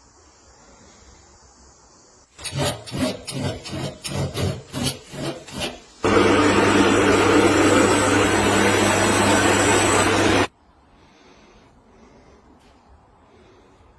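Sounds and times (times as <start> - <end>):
rhythmic filing strokes: 2.4 - 10.5
machine humming: 6.0 - 10.5.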